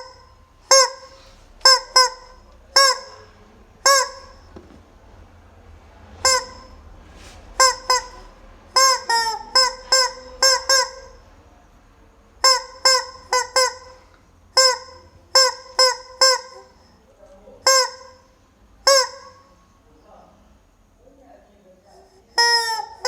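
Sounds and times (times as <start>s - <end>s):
rubber chicken squeaking: 0.0s - 4.8s, 6.2s - 6.8s, 7.6s - 11.2s, 12.4s - 14.0s, 22.3s - 23.0s.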